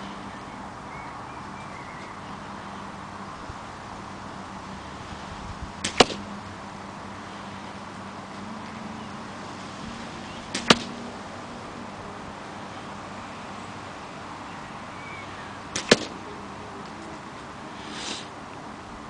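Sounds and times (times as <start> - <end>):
airsoft rifle shots snapping: 5.8 - 6.3, 10.5 - 11.0, 15.7 - 16.2.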